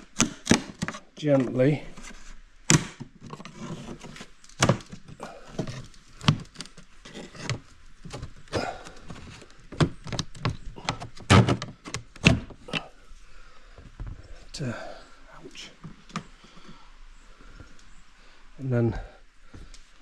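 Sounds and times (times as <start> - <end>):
knife prising wooden trim: 0.1 - 1.1
knocks and thunks: 9.7 - 12.7.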